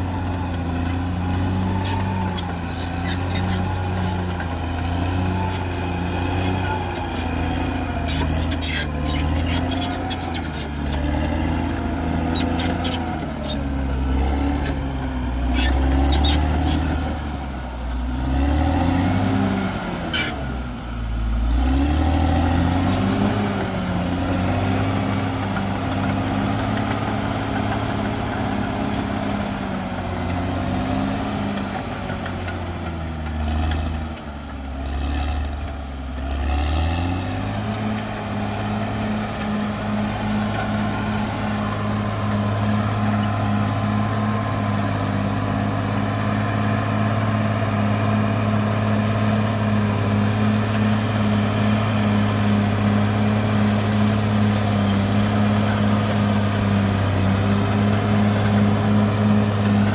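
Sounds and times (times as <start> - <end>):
high squeaks: 0.0 - 17.4, 20.1 - 20.7, 24.0 - 51.0
bulldozer diesel engine working: 0.0 - 59.9.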